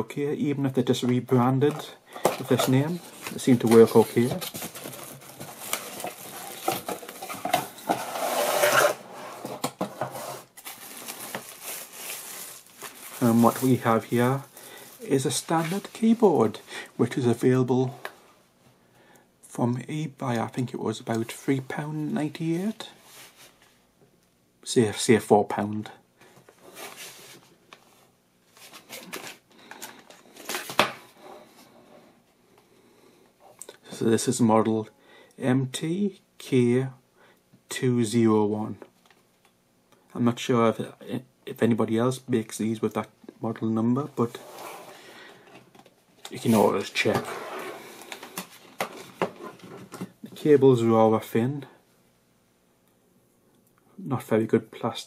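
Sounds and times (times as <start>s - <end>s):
packaging rustling: 1.7s - 9.0s, 10.4s - 16.3s.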